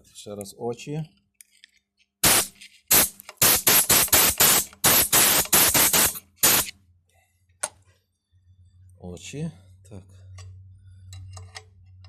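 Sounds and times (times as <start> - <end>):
air blow gun hissing blasts: 2.2 - 6.7.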